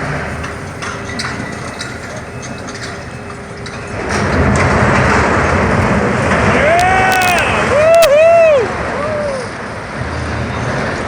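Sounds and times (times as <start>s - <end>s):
crash of falling debris: 3.7s - 8.2s.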